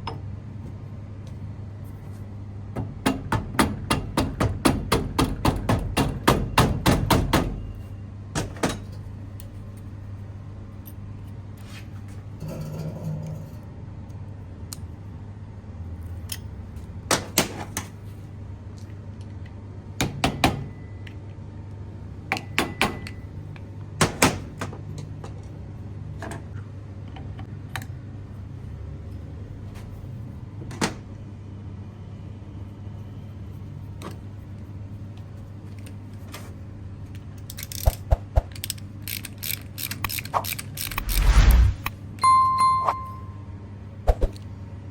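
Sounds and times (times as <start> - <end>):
steady low hum: 40.6 - 43.6.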